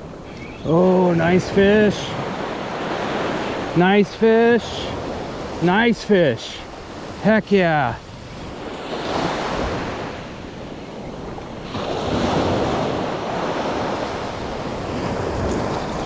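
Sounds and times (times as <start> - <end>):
ocean surf breaking: 0.0 - 16.0
wind buffeting microphone: 7.8 - 16.0.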